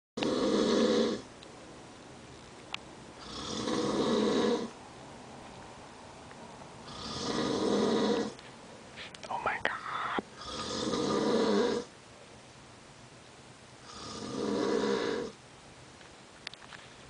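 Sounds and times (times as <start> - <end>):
man snoring: 0.2 - 1.3, 3.2 - 4.7, 6.8 - 8.4, 9.4 - 11.9, 13.8 - 15.4.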